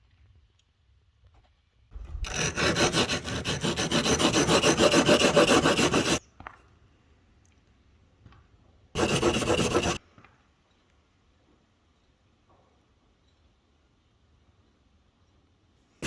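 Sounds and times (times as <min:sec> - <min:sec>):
rasping sanding strokes on metal: 0:02.0 - 0:06.2, 0:09.0 - 0:10.0.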